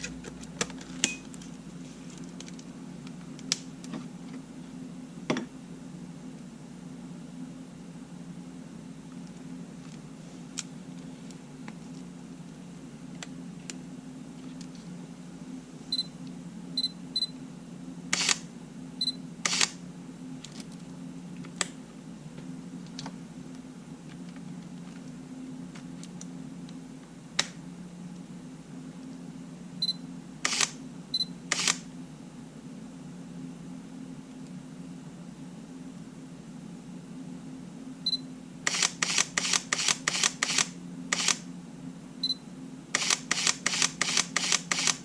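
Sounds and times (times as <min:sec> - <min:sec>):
camera shutter clicks: 0:18.1 - 0:18.4, 0:19.4 - 0:19.8, 0:30.4 - 0:30.8, 0:31.5 - 0:31.8, 0:38.7 - 0:41.4, 0:43.0 - 0:45.0
short high camera beeps: 0:18.2 - 0:18.4, 0:19.0 - 0:19.7, 0:29.8 - 0:31.8, 0:38.1 - 0:41.4.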